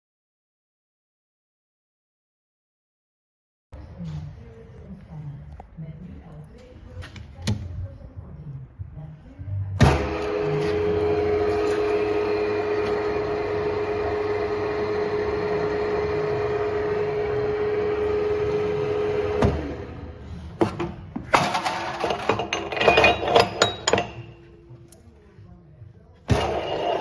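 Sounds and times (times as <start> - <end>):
electric motor humming: 9.8 - 20.2
metallic clinks and knocks: 21.3 - 25.1.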